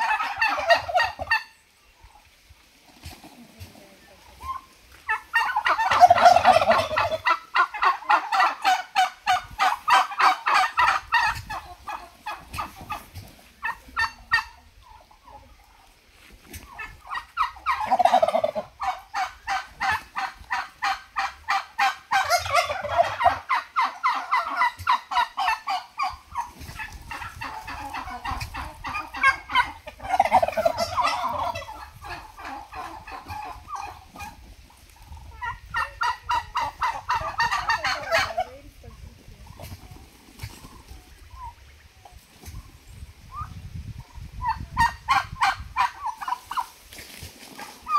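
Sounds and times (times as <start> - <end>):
turkeys gobbling: 0.0 - 47.9.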